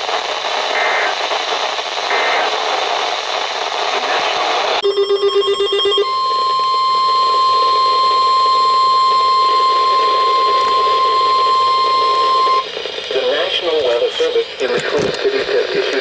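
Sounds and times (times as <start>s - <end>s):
steady high warning alarm tone: 4.8s - 13.0s.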